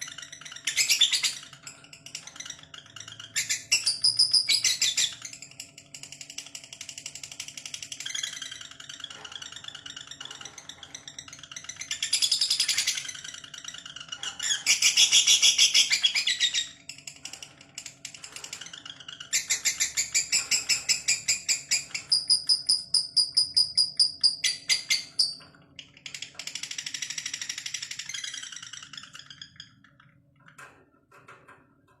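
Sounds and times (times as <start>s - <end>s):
lovebird chattering: 19.2s - 25.4s.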